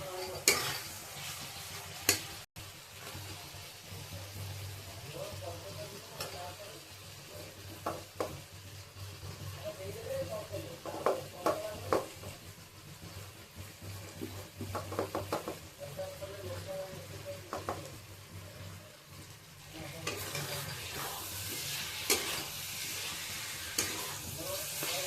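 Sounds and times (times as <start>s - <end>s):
food sizzling in a pan: 0.0s - 25.0s.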